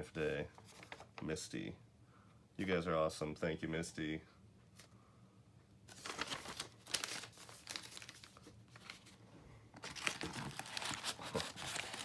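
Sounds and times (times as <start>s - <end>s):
packaging wrap crinkling: 5.9s - 9.2s, 9.8s - 12.0s.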